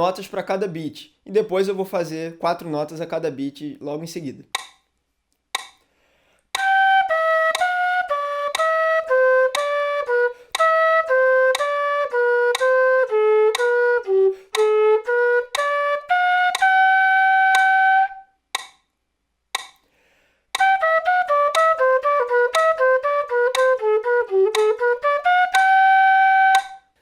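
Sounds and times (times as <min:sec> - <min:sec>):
metronome clicking: 0:04.5 - 0:05.9, 0:06.6 - 0:18.9, 0:19.5 - 0:19.9, 0:20.5 - 0:27.0.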